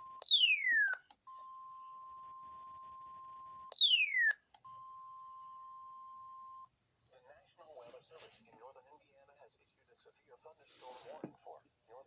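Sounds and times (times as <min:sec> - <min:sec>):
electronic chirp sweeping down: 0:00.0 - 0:01.0, 0:03.7 - 0:04.4
steady alarm tone: 0:00.0 - 0:06.6.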